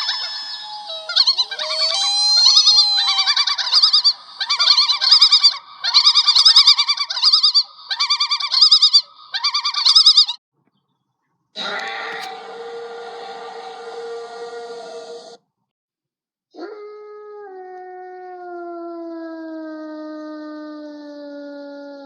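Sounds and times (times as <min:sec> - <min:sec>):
trilling creature calls: 0:00.0 - 0:10.4, 0:11.6 - 0:15.4.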